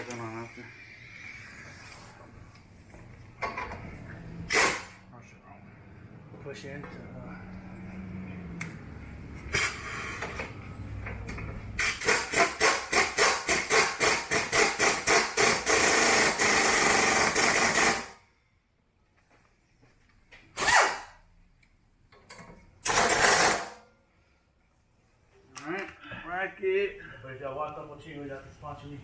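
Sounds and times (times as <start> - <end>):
impact wrench hammering: 11.8 - 18.2.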